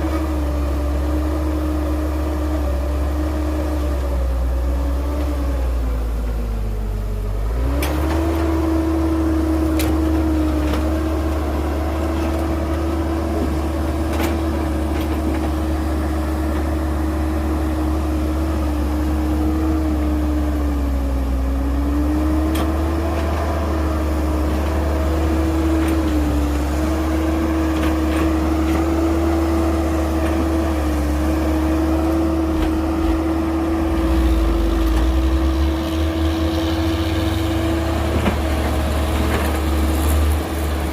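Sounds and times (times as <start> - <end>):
diesel engine rumble: 0.0 - 40.9
machinery whine: 21.8 - 40.9.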